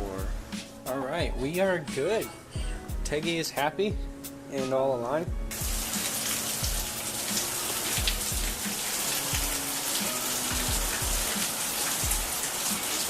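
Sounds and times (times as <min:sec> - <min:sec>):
music with kick-drum beat: 0:00.0 - 0:04.4, 0:05.3 - 0:13.0
steady rain: 0:05.5 - 0:13.0.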